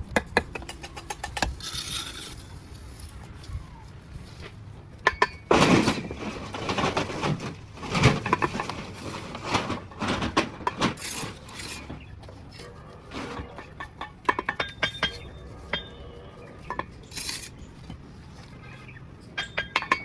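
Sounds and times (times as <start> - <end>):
bricks and trowels clinking: 0.2 - 3.2, 5.0 - 20.0
mortar scraping: 0.4 - 3.2, 5.5 - 14.1.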